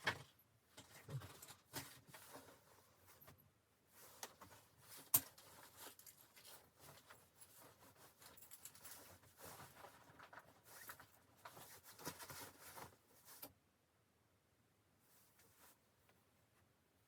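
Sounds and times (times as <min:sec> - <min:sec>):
faint rustling and clicks: 0:00.0 - 0:13.6.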